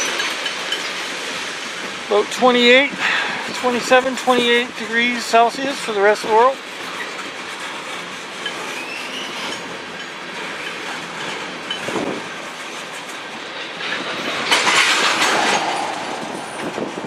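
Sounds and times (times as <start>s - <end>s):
train wheels clattering on track: 0.0s - 17.0s
wheel squeal: 6.8s - 12.1s
rush of noise: 11.9s - 17.0s.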